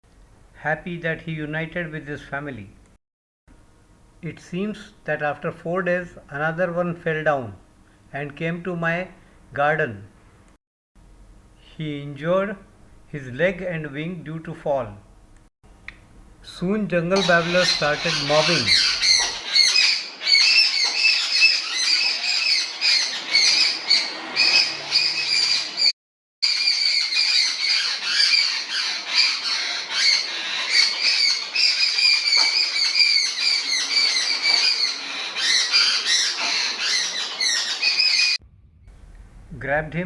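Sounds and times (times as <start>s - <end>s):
birds squawking alarm calls: 17.2s - 38.4s.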